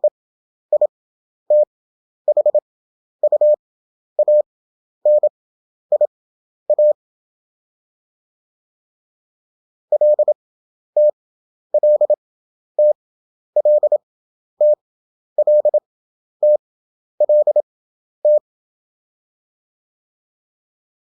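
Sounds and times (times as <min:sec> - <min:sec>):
morse code beeps: 0:02.3 - 0:02.6, 0:03.2 - 0:03.6, 0:04.2 - 0:04.5, 0:05.1 - 0:05.3, 0:06.7 - 0:07.0, 0:09.9 - 0:10.4, 0:11.8 - 0:12.2, 0:12.8 - 0:13.0, 0:13.6 - 0:14.0, 0:14.6 - 0:14.8, 0:15.4 - 0:15.8, 0:17.2 - 0:17.7.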